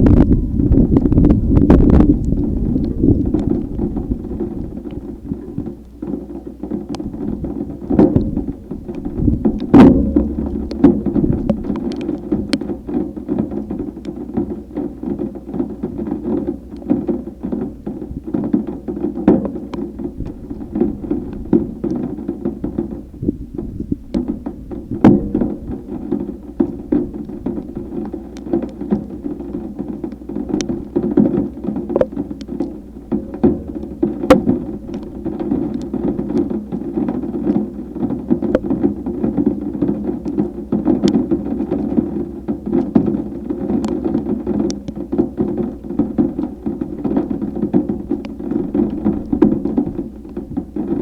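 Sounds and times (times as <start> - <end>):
gust of wind: 0.0 - 5.4
rain tapping and knocking: 0.0 - 51.0.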